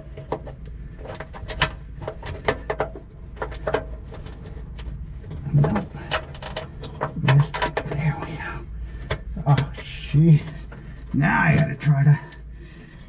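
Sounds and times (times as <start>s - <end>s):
metal parts clicking and tapping: 0.0s - 8.0s.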